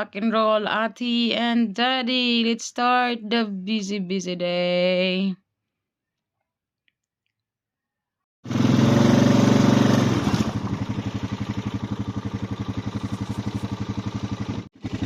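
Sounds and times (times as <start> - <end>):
farm vehicle engine pulsing: 8.6 - 15.0.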